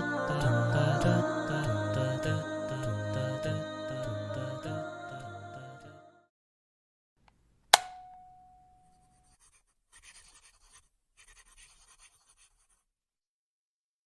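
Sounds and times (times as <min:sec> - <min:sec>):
ringing clink: 0:07.8 - 0:09.1
pen scratching on paper: 0:08.9 - 0:12.9.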